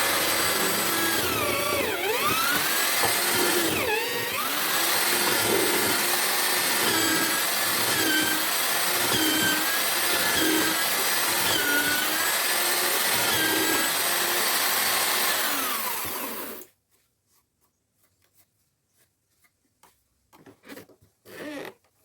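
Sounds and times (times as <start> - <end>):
drill motor whine cutting wood: 0.0 - 16.7.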